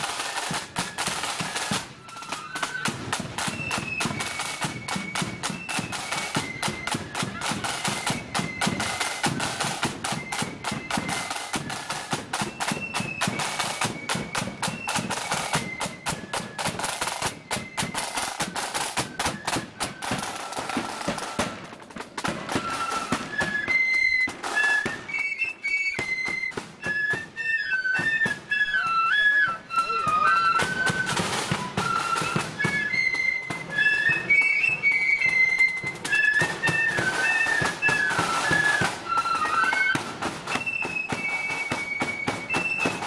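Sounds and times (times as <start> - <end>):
rapid drumming: 0.0 - 25.2
flute melody: 0.0 - 43.0.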